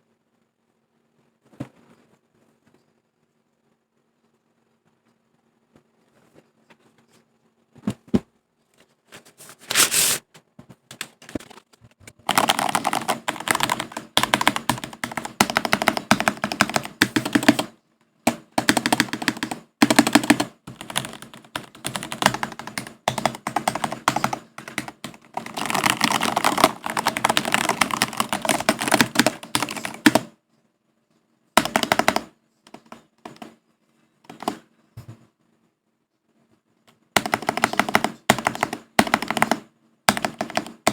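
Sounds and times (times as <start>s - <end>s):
typing on mechanical keyboard: 12.2s - 30.4s, 31.6s - 33.6s, 34.3s - 34.6s, 37.2s - 40.9s.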